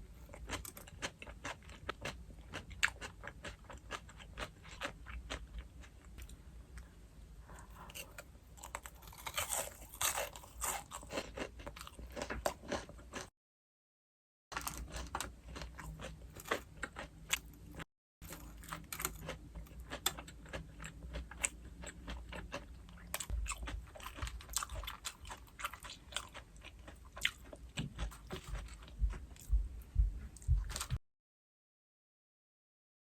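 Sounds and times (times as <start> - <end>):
crunchy bites and chewing: 0.2 - 6.4, 7.6 - 13.3, 14.5 - 29.5.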